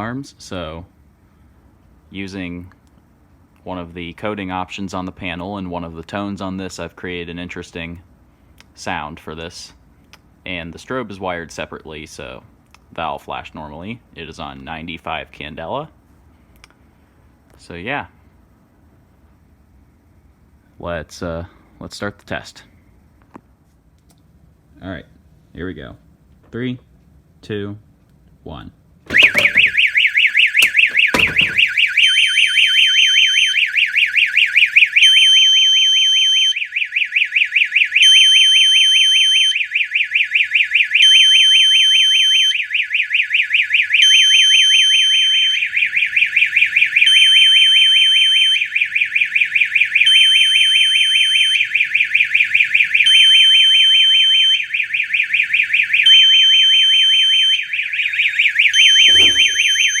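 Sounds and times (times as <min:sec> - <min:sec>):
fire alarm warbling tone: 0:29.1 - 0:33.3, 0:56.1 - 1:00.0
steady high alarm tone: 0:57.1 - 1:00.0.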